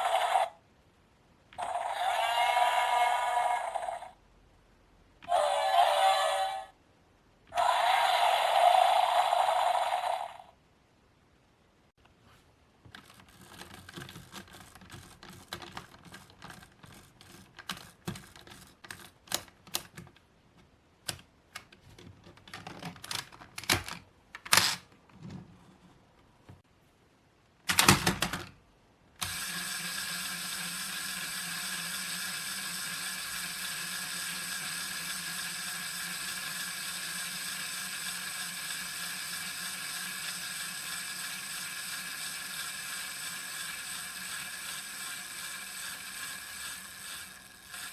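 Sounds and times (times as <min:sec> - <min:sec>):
toy drill motor whirring: 0:00.0 - 0:00.6, 0:01.6 - 0:04.2, 0:05.2 - 0:06.7, 0:07.5 - 0:10.5, 0:29.2 - 0:47.9
plastic toy parts clicking: 0:12.9 - 0:20.2, 0:21.0 - 0:24.9, 0:29.2 - 0:47.9.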